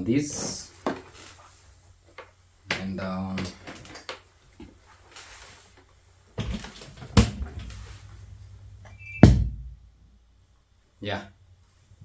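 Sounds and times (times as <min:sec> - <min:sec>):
knocks and clicks of handling: 0:06.4 - 0:09.9
speaker hum: 0:06.4 - 0:10.2.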